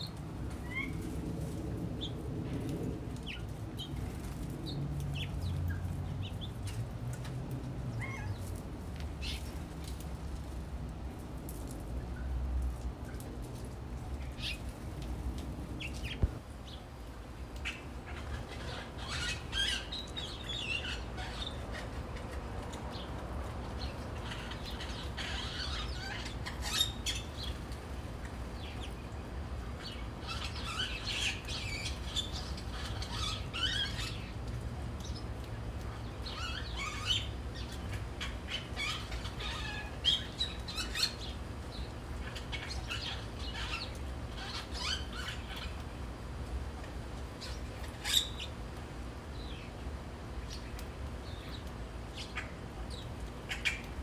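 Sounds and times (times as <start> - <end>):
small birds chirping: 0.0 - 10.1, 11.4 - 46.2, 47.2 - 54.0.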